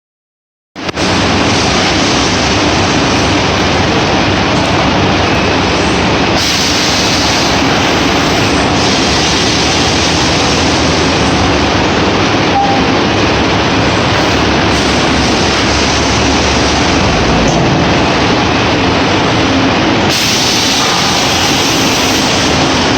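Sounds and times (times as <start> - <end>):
bright hiss: 20.1 - 22.9.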